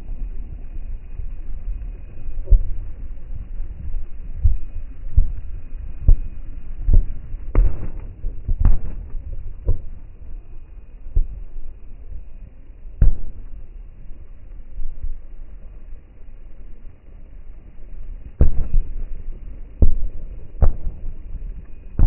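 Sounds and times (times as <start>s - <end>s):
steady low rumble: 0.0s - 22.0s
dull firework booms: 6.1s - 10.5s, 13.0s - 13.6s, 18.4s - 19.2s, 19.8s - 21.4s.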